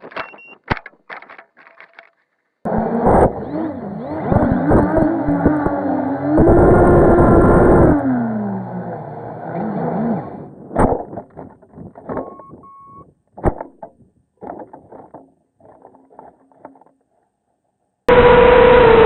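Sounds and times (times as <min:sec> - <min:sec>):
knocks and clatters: 0:00.0 - 0:02.6, 0:10.7 - 0:17.4
quadcopter motors winding down: 0:02.7 - 0:10.6, 0:18.1 - 0:19.0.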